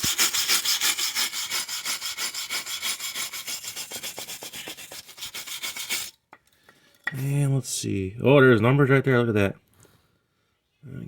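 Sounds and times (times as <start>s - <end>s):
rapid scrubbing strokes: 0.0s - 6.2s.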